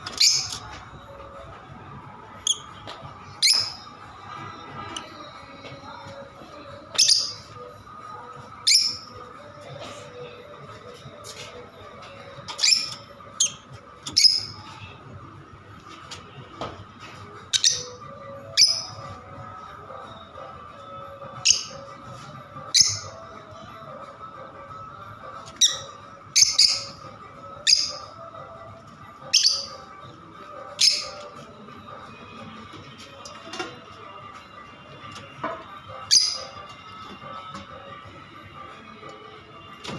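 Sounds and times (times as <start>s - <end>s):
lovebirds squawking chirps: 0.1s - 0.7s, 3.4s - 3.9s, 12.5s - 14.6s, 17.5s - 19.0s, 22.8s - 23.2s, 25.5s - 28.2s, 29.3s - 29.9s, 30.8s - 31.3s, 36.1s - 36.6s.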